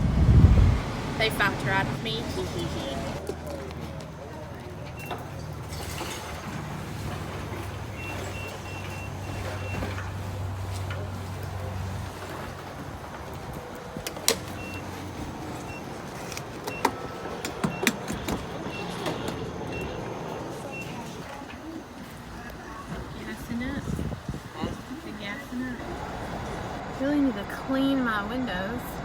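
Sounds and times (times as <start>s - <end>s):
low motor hum: 0.0s - 3.2s.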